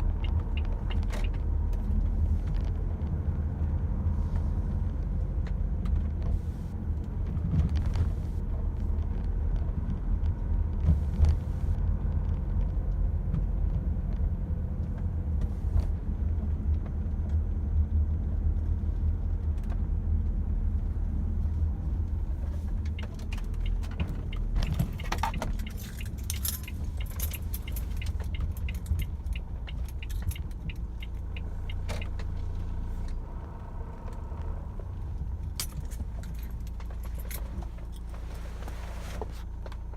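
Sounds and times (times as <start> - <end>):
car engine rumbling: 0.0 - 39.9
light metallic jingling: 24.3 - 31.8.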